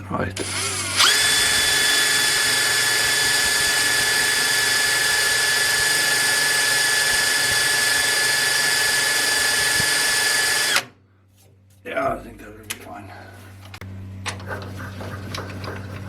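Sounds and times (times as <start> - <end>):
metal lathe whining: 0.4 - 10.8.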